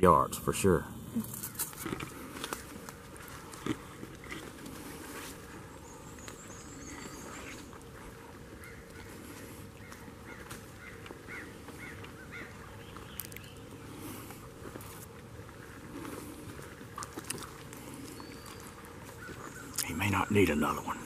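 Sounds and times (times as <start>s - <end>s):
small bird chirping: 5.8s - 7.8s, 9.8s - 13.9s, 18.0s - 20.5s.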